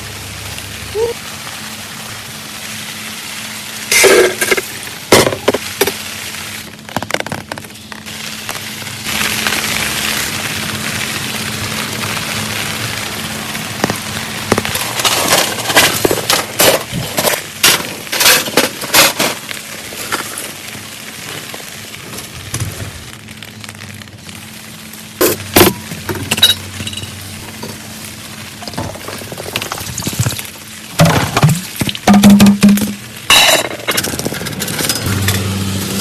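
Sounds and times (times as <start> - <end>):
steady hiss: 0.0 - 36.0
hard objects clinking and knocking: 31.0 - 35.1.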